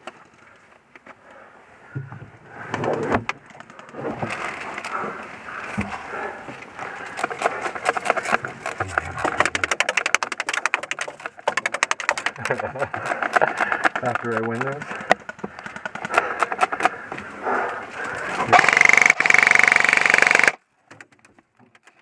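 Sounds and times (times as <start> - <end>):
airsoft guns firing rapid clicks: 7.2 - 17.0, 18.4 - 20.6.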